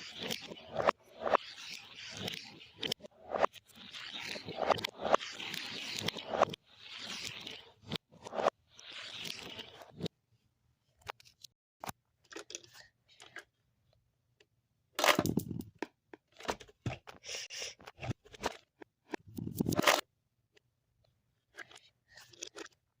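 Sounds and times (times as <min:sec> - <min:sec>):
crinkling and scraping handling noise: 0:15.0 - 0:20.7.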